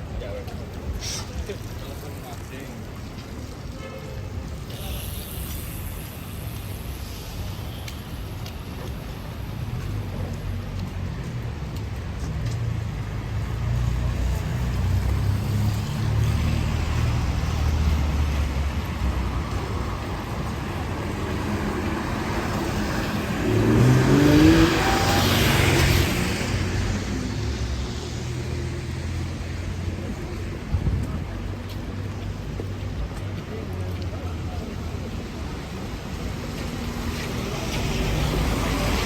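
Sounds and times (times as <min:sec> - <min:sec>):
vehicle accelerating past: 0:21.6 - 0:27.5.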